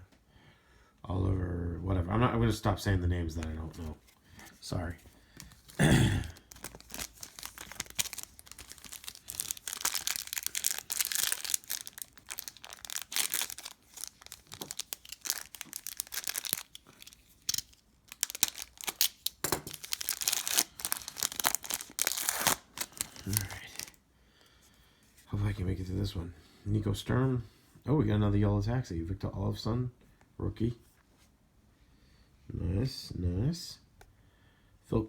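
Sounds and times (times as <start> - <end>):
foil wrapper tearing and crinkling: 5.5 - 24.0.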